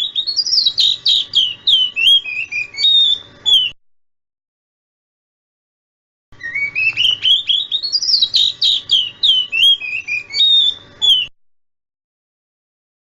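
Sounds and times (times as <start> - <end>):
bird whistled song: 0.0 - 3.8, 6.4 - 11.4.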